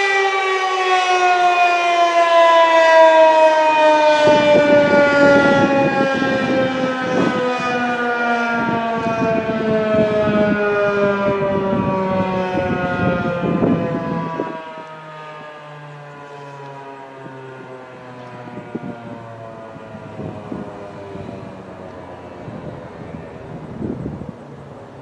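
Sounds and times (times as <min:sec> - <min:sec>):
warning siren with falling pitch: 0:00.0 - 0:25.0.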